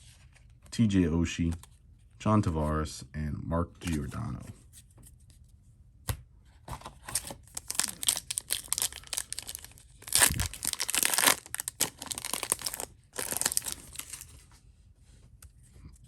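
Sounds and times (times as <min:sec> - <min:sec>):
plastic wrapper crinkling and tearing: 0:07.1 - 0:14.4.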